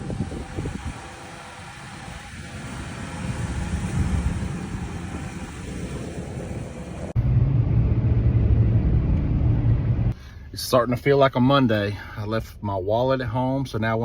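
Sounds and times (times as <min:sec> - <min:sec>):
loud low drone: 0:00.0 - 0:10.2
vehicle engine and road noise: 0:00.0 - 0:13.2.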